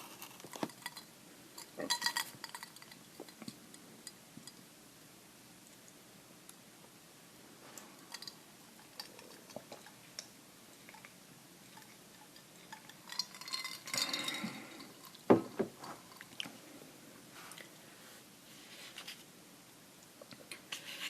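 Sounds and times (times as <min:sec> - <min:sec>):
rustling and crackling: 0:00.0 - 0:04.6, 0:07.5 - 0:19.4
ice cubes clinking in a glass: 0:01.7 - 0:03.0, 0:12.7 - 0:15.2.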